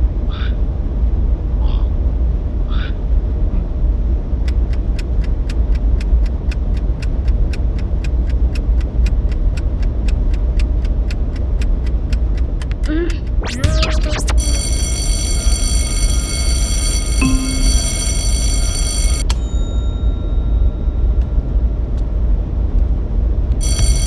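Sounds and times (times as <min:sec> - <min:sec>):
upward sweep of pitched tones: 0:13.4 - 0:14.7, 0:17.2 - 0:18.5.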